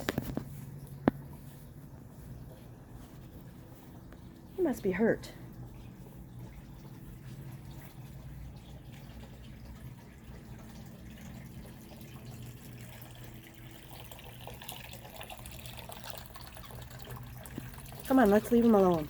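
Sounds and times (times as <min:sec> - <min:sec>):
faint trickling water: 0:00.0 - 0:19.0
steady low hum: 0:00.0 - 0:19.0.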